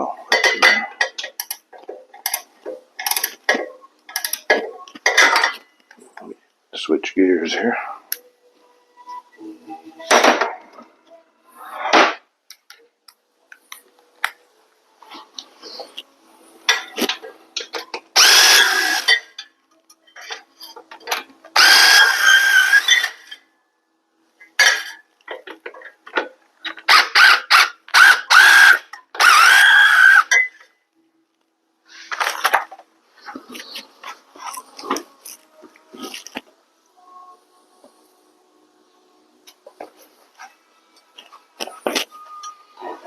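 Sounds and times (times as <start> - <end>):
small metal clicks: 1.2 - 3.5, 4.1 - 5.0
power tool motor whine: 18.2 - 19.2, 21.6 - 23.1.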